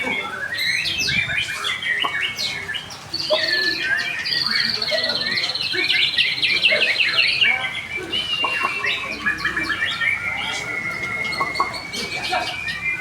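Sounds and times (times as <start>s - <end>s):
songbird trills and chirps: 0.0s - 13.0s
long steady bird whistle: 8.1s - 13.0s.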